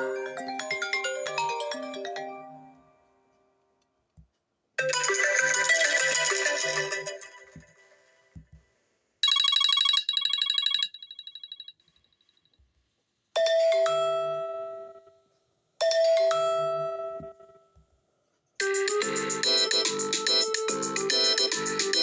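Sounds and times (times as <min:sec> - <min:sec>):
ringing chime: 0:09.2 - 0:11.8.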